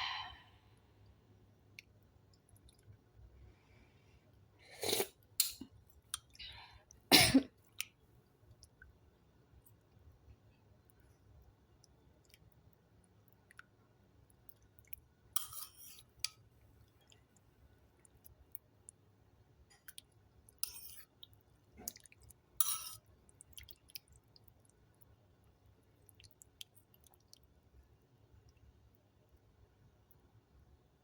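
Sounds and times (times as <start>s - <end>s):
person sipping soup: 4.6s - 7.0s, 10.9s - 18.6s, 19.7s - 24.8s.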